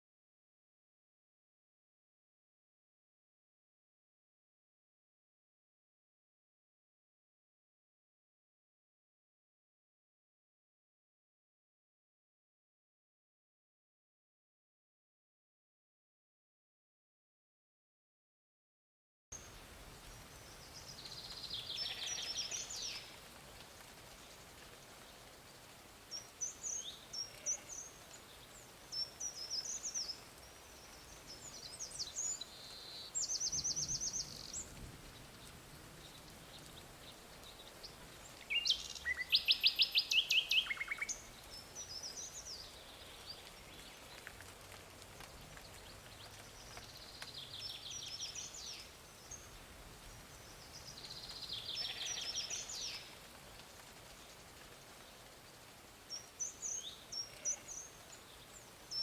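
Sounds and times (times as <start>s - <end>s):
faint background hiss: 19.4s - 59.0s
songbirds chirping and trilling: 19.4s - 59.0s.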